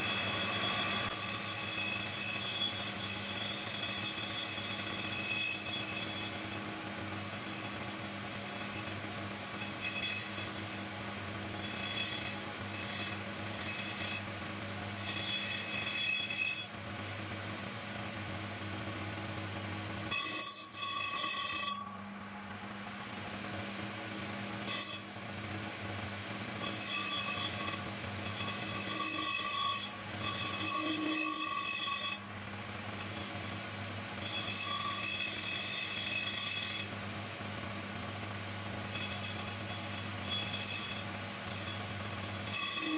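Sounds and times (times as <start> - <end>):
tool squealing cutting metal: 0.0 - 14.3, 14.9 - 16.7, 20.1 - 21.9, 24.6 - 25.2, 26.6 - 32.3, 33.0 - 36.9, 38.8 - 42.9.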